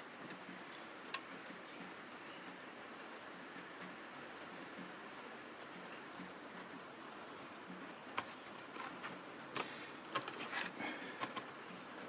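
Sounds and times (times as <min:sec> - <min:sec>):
plastic crinkling and clicking: 0:08.2 - 0:11.5.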